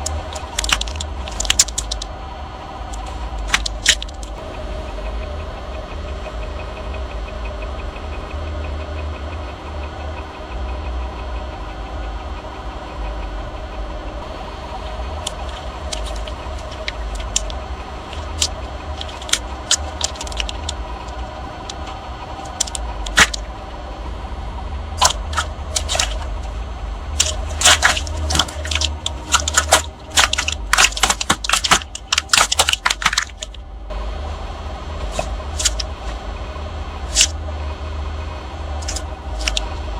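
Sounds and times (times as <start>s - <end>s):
objects crunching under tyres: 0.0s - 2.1s, 2.9s - 4.4s, 15.2s - 23.5s, 25.0s - 26.5s, 27.2s - 33.6s, 35.0s - 36.2s, 37.0s - 37.4s, 38.8s - 39.7s
car engine running: 0.0s - 39.9s.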